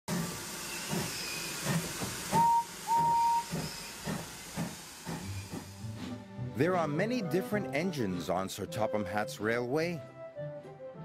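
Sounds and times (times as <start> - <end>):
hiss of steam: 0.1 - 6.0
steam locomotive chuffing: 0.1 - 6.3
train whistle toots: 2.3 - 4.0.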